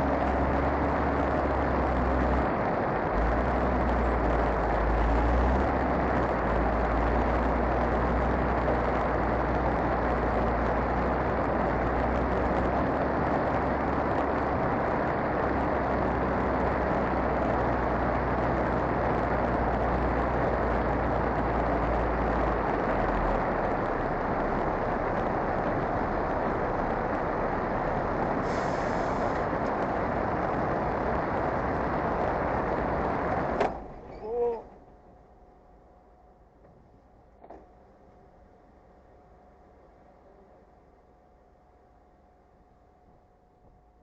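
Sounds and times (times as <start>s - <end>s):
constant rushing noise: 0.0s - 34.8s
vehicle engine idling: 0.0s - 43.4s.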